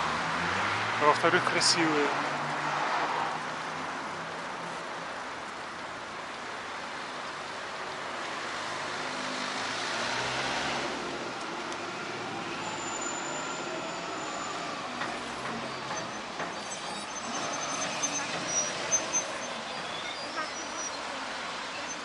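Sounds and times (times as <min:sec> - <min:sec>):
motor vehicle passing: 0:08.5 - 0:12.7.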